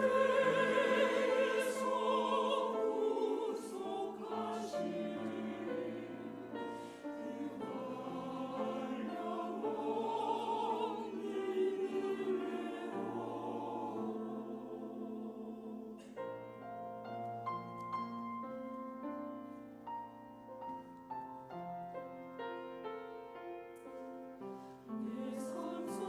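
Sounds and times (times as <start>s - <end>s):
choir singing a hymn: 0.0s - 17.0s, 24.4s - 26.0s.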